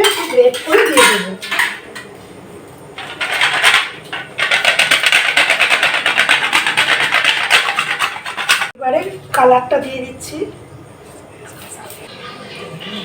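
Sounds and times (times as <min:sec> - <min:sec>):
nutmeg rasping on metal grater: 0:04.4 - 0:08.8.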